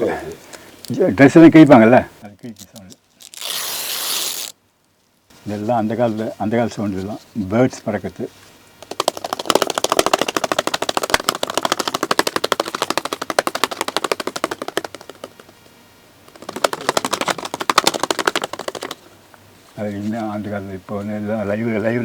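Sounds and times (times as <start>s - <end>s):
wings flapping: 8.8s - 15.6s, 16.3s - 19.1s.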